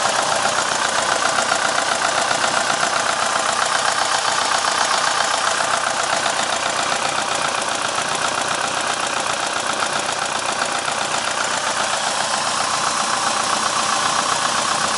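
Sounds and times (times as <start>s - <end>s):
car engine idling with knocking: 0.0s - 14.9s.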